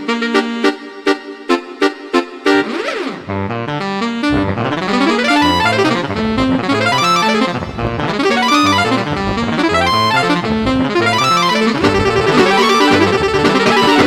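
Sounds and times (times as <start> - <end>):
bus horn melody: 0.0 - 14.0
electronic beat and bass line: 4.3 - 14.0.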